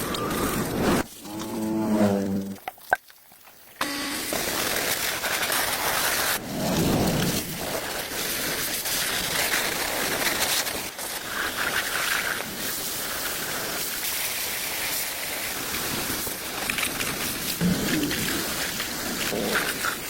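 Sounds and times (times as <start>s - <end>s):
steady rain falling: 12.4s - 20.0s.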